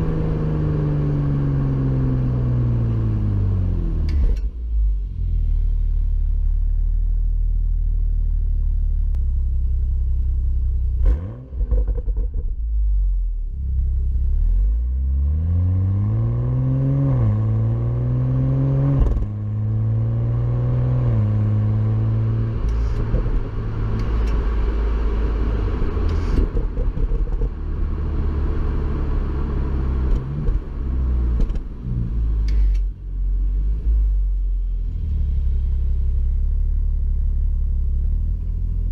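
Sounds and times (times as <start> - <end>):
car exhaust revving and accelerating: 0.0 - 38.9
exhaust cracks: 25.8 - 28.1.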